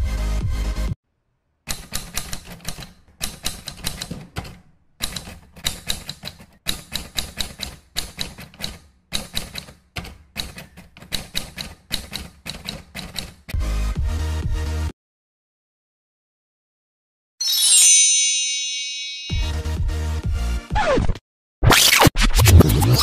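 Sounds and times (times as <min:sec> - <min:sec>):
rapid keyboard typing clicks: 0:01.7 - 0:13.6.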